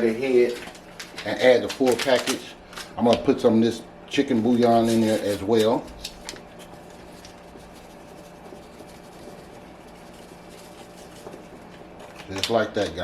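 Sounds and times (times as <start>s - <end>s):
steady low hum: 0.0s - 13.0s
light scratching and rubbing: 6.7s - 11.7s.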